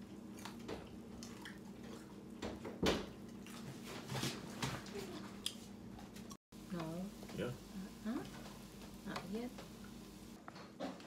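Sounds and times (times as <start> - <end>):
steady low hum: 5.9 - 10.4.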